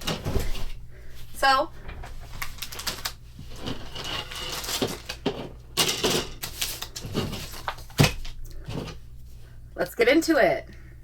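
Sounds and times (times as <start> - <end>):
plastic parts rustling and clattering: 0.0 - 0.8, 1.4 - 9.0.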